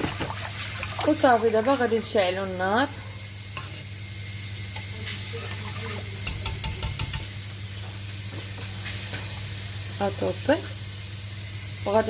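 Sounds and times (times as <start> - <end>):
stove spark igniter clicking: 6.2 - 7.3.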